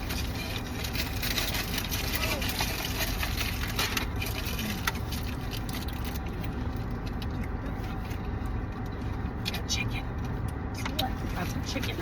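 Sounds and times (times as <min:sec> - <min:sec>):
food wrappers rustling: 0:00.0 - 0:08.6.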